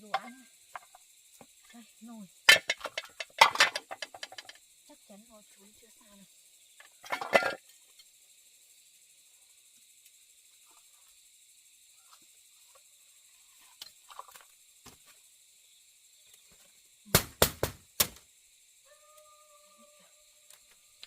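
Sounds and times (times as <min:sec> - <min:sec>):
loud sharp knocks: 0:17.1 - 0:18.2.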